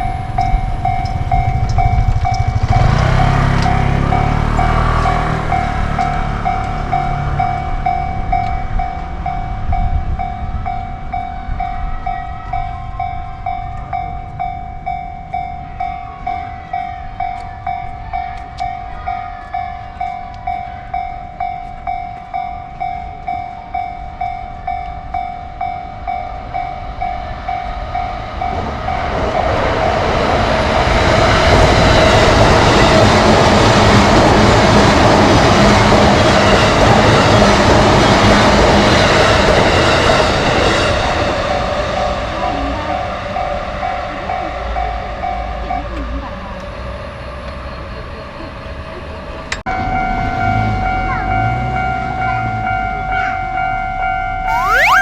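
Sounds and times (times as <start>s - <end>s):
level crossing bell dinging: 0.0s - 23.4s, 54.5s - 55.0s
train passing rail noise: 0.0s - 55.0s.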